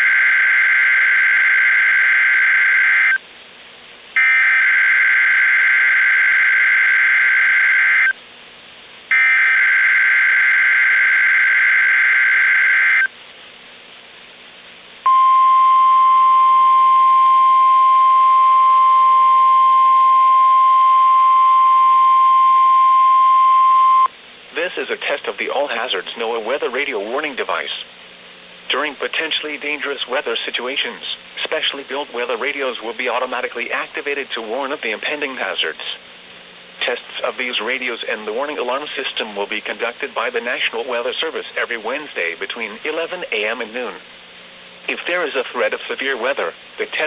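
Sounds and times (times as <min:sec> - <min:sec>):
steady high-pitched alarm tone: 0:09.1 - 0:13.1, 0:15.1 - 0:24.1.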